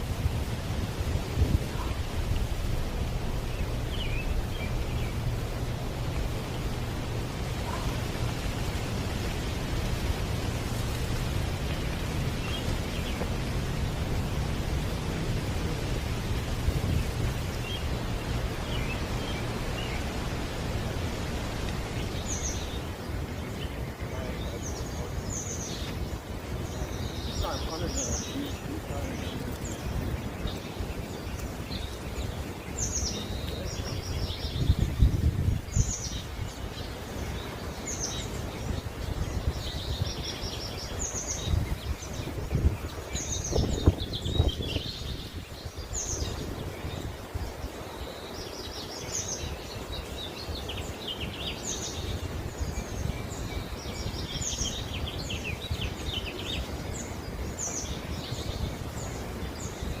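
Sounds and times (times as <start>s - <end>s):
low background rumble: 0.0s - 21.1s
small birds chirping: 0.0s - 60.0s.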